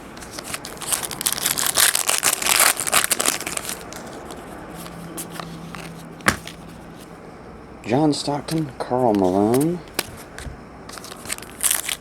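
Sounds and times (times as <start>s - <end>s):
wrapper tearing and crinkling: 0.2s - 6.6s, 10.9s - 12.0s.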